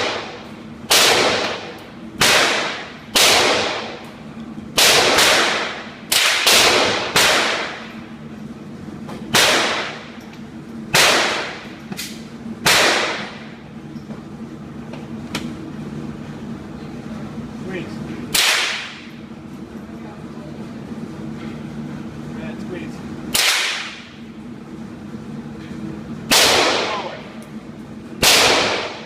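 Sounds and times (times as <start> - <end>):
rifle shots echoing: 0.0 - 4.0, 4.8 - 7.9, 9.3 - 10.0, 10.9 - 11.7, 12.6 - 13.5, 18.3 - 19.1, 23.3 - 24.0, 26.3 - 27.1, 28.2 - 29.0.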